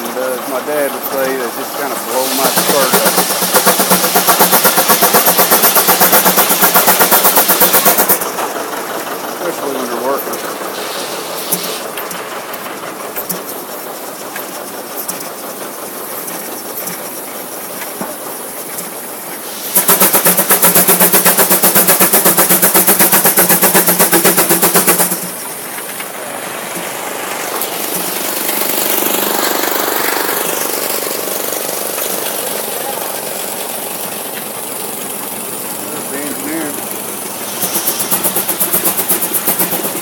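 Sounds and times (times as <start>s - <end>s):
loud rapidly pulsing noise: 0.0s - 8.3s, 27.4s - 40.0s
steam engine running sawmill: 0.0s - 40.0s.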